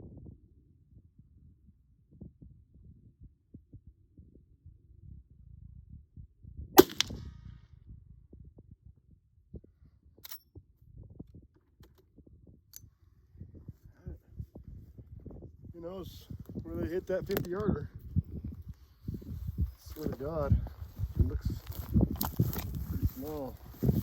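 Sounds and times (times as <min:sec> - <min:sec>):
rifle shot with ring: 0:06.8 - 0:07.5.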